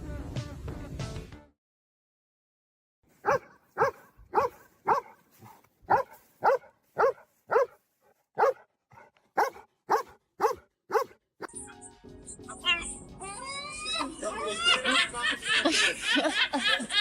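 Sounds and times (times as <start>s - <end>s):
dog barking: 3.2s - 7.8s, 8.4s - 11.2s.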